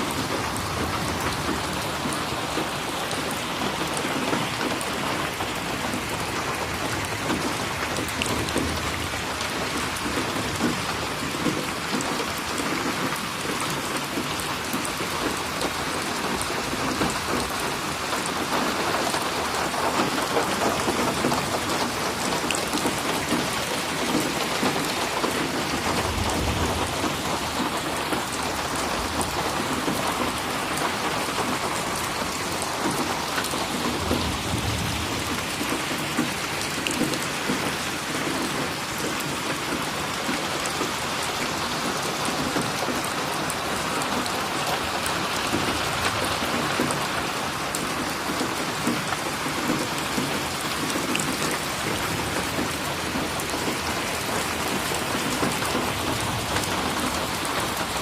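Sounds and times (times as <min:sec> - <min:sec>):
rain splashing on a surface: 0:00.0 - 0:58.0.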